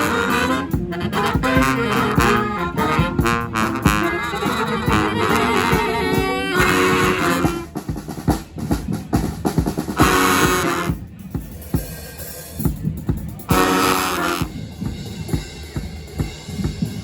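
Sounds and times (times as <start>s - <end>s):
horn chords: 0.0s - 8.7s, 9.8s - 11.3s, 13.3s - 15.4s
bass drum and snare groove: 0.0s - 17.0s.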